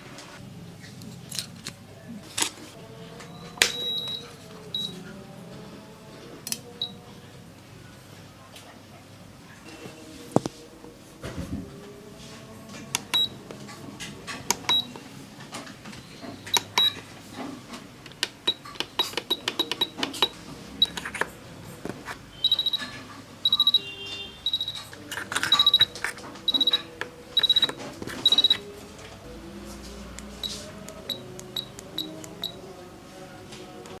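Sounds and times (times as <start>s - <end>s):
buttons clicking: 16.5s - 17.1s, 18.0s - 21.3s, 24.4s - 28.8s, 30.1s - 32.6s
buzzer short high beeps: 22.3s - 24.9s, 25.5s - 28.6s.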